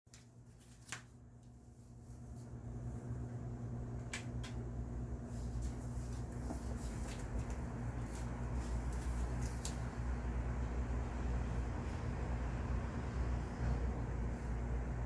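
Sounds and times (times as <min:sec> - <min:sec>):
electric fan motor humming: 0:00.1 - 0:15.0.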